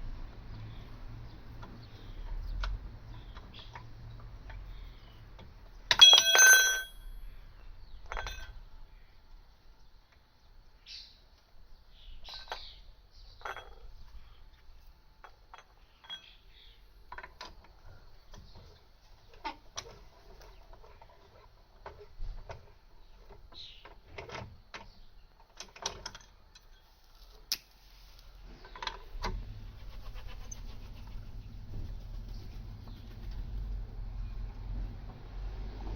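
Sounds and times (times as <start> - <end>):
low steady rumble: 28.1 - 35.9
birds chirping: 28.5 - 34.4.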